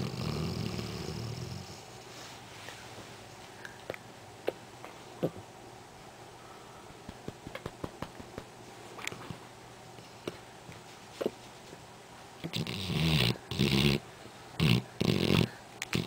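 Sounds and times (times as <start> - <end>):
dog snoring: 0.0 - 2.0, 12.4 - 14.0, 14.6 - 16.0.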